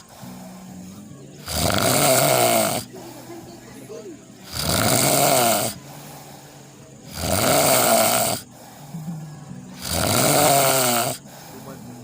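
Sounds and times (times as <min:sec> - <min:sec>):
quiet breath: 0:00.0 - 0:04.7, 0:05.5 - 0:07.3, 0:08.2 - 0:10.0, 0:11.0 - 0:12.0
loud snores: 0:01.4 - 0:02.9, 0:04.4 - 0:05.9, 0:07.0 - 0:08.7, 0:09.7 - 0:11.3.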